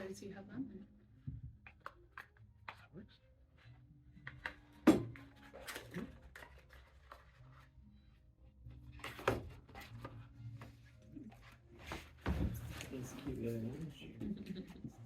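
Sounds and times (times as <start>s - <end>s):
objects scraping and rustling: 5.2s - 7.8s, 8.9s - 15.0s.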